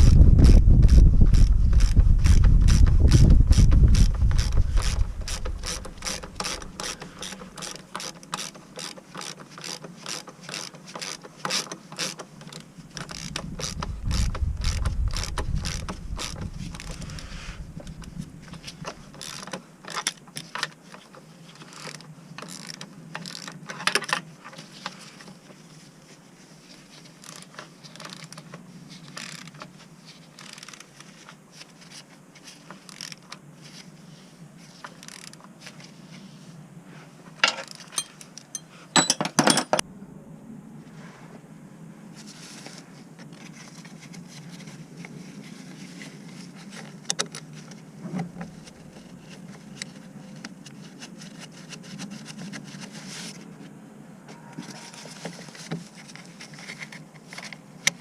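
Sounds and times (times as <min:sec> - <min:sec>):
metal tools clinking and scraping: 0:37.4 - 0:39.8
sharp metal clatters: 0:37.4 - 0:39.8.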